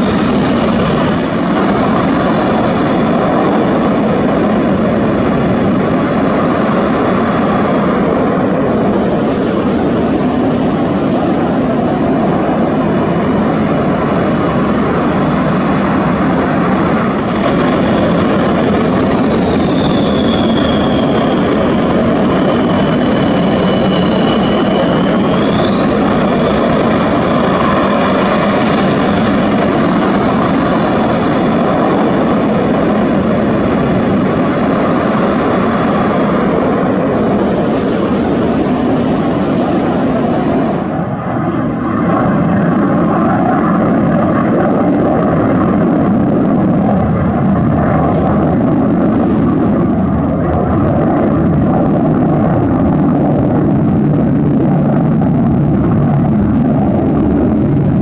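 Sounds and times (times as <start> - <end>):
jet engines roaring: 0.0 - 58.0
high engine whistle: 17.6 - 30.8.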